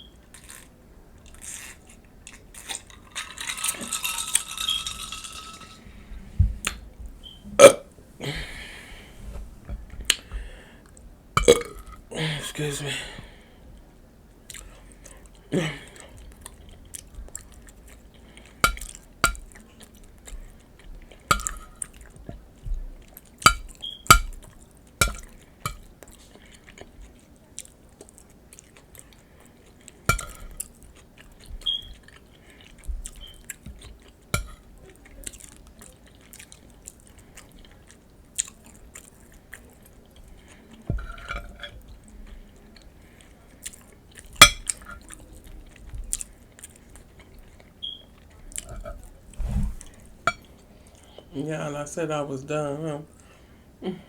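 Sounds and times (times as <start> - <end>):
person chewing crunchy food: 0.3 - 7.8, 16.0 - 49.2
utensils clicking on a plate: 2.6 - 5.9, 21.3 - 21.8, 23.5 - 24.4, 25.0 - 25.9.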